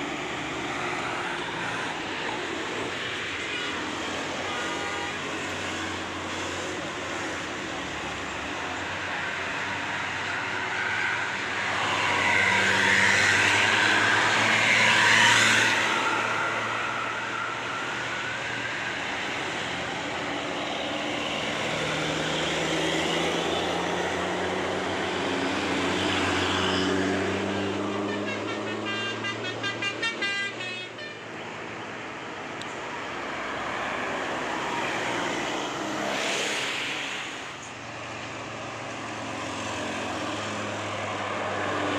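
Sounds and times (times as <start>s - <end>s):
bus engines labouring uphill: 0.0s - 41.9s
multi-tone bus horn toots: 3.4s - 5.5s, 27.4s - 31.4s.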